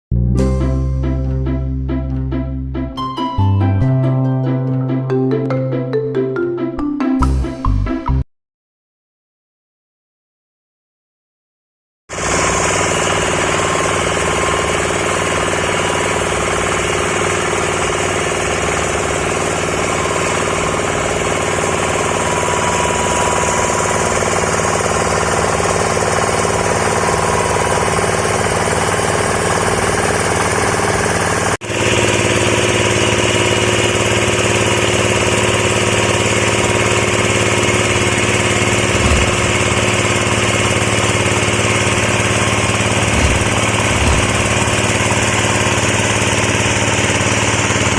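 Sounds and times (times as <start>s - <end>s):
engine-driven disk mill running: 12.1s - 47.9s.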